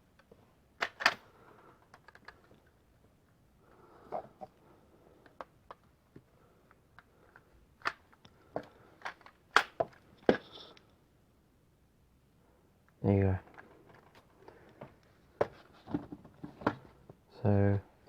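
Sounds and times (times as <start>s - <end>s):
plastic toy gun clicking: 0.8s - 1.2s.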